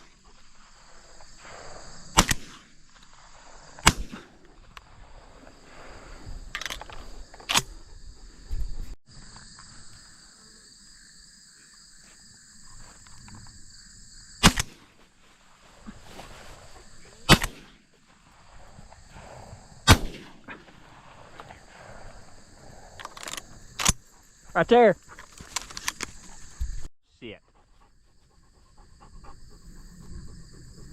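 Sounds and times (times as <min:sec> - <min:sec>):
shotgun shots: 0:02.1 - 0:02.7, 0:03.8 - 0:04.4, 0:14.4 - 0:14.9, 0:17.3 - 0:17.8, 0:19.9 - 0:20.5.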